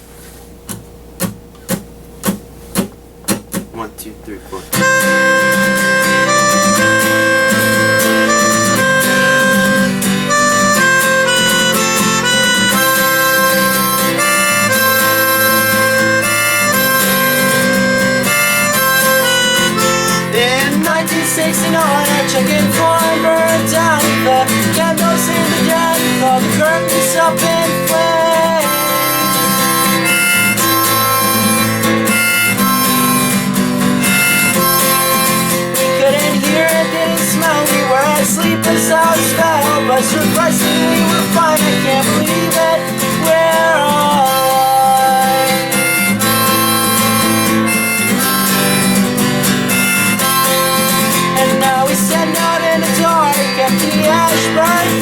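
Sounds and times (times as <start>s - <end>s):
strummed acoustic guitar: 0.0s - 55.0s
harmonica melody: 3.6s - 55.0s.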